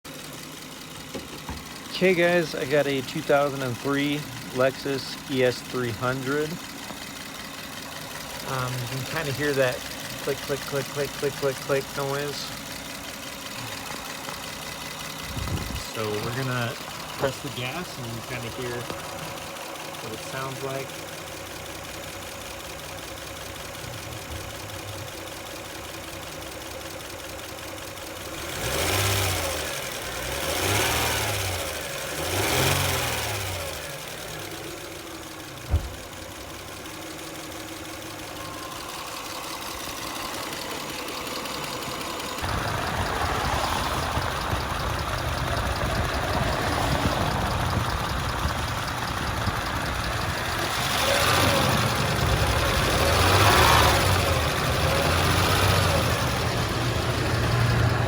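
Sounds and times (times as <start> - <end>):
car engine idling with lifter tick: 0.1 - 58.0
engine revving: 1.5 - 6.8, 8.0 - 27.1, 28.0 - 36.7, 37.3 - 58.0.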